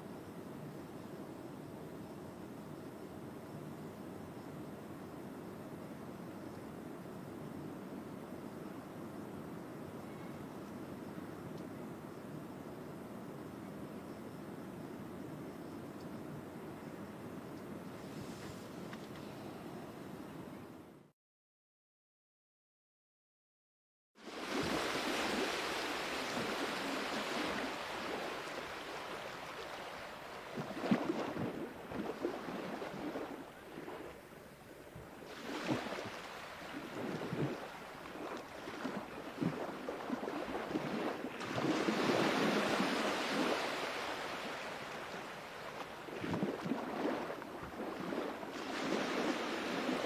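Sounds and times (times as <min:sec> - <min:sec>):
sea waves washing in: 0:24.2 - 0:50.0.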